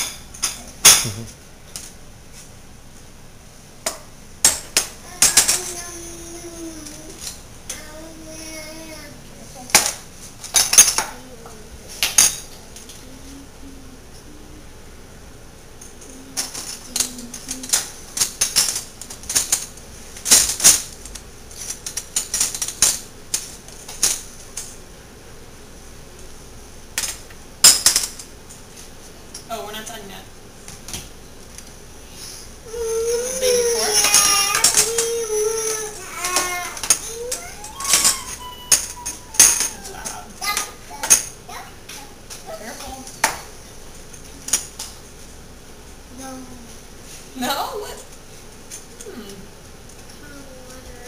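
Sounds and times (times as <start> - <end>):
silverware clinking in drawer: 33.7 - 40.2.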